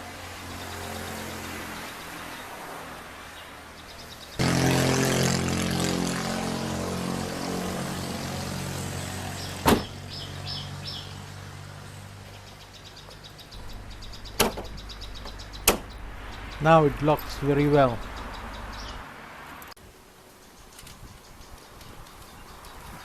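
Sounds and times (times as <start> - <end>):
sharp clunk: 9.6 - 9.9, 14.4 - 14.8, 15.6 - 16.0.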